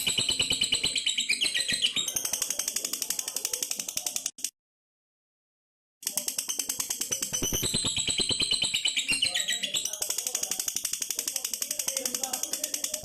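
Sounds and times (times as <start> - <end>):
lovebird chattering: 0.0 - 4.3, 6.2 - 13.0.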